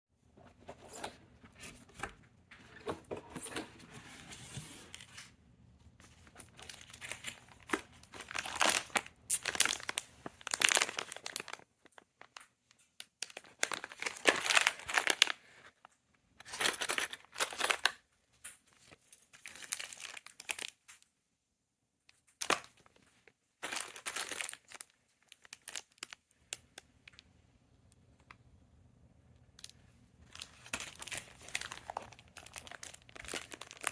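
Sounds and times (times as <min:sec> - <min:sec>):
packaging crinkling and tearing: 0:06.1 - 0:21.0, 0:23.6 - 0:26.8, 0:29.6 - 0:33.9.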